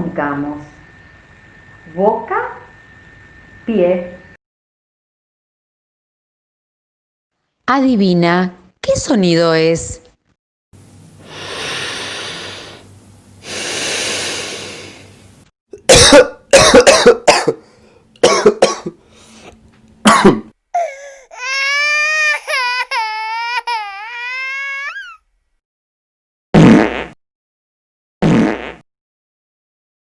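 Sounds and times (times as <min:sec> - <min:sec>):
noisy breaths: 0:11.0 - 0:15.4, 0:19.0 - 0:19.6, 0:20.8 - 0:21.4
sharp coughs: 0:15.8 - 0:17.6, 0:18.2 - 0:19.0, 0:20.0 - 0:21.2
high-pitched wavering crying: 0:20.8 - 0:25.2.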